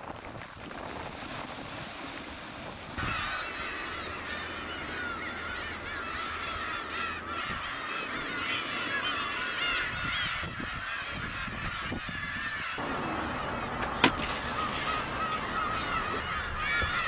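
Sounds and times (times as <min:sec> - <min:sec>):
flock of birds calling: 0:03.0 - 0:17.0.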